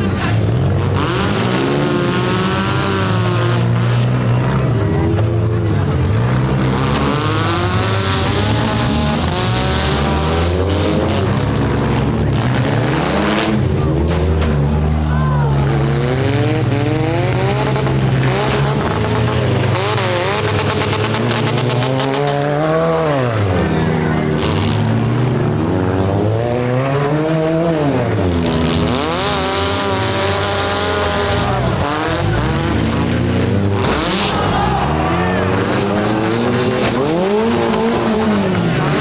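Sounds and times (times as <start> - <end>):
car engines revving: 0.0 - 39.0
cars colliding bangs: 7.7 - 25.6, 28.3 - 39.0.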